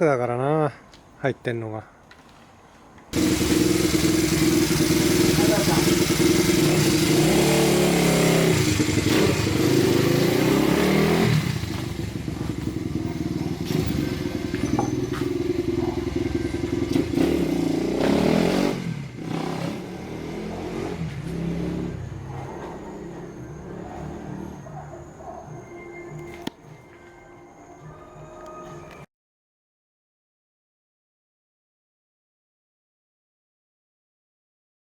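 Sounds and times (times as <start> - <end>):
motorcycle engine revving: 3.2 - 26.5.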